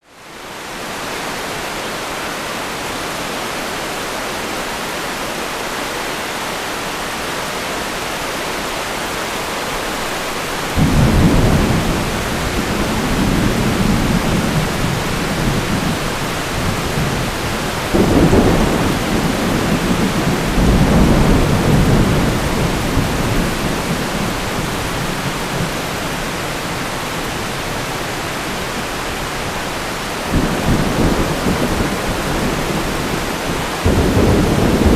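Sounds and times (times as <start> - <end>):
heavy rain hiss: 0.1 - 34.9
thunder rumbling: 10.7 - 26.8, 30.3 - 34.9.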